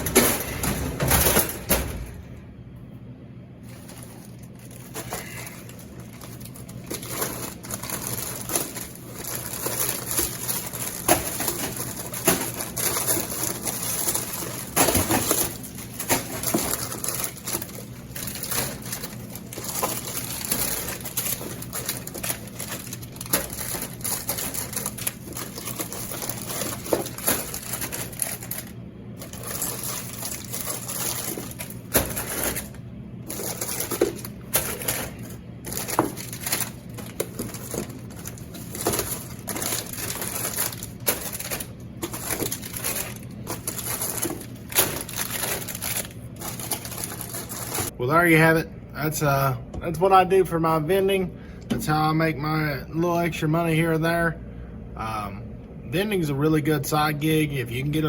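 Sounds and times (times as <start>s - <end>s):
snack bags crinkling: 0.0s - 1.8s, 3.5s - 48.0s
steady low hum: 0.0s - 58.0s.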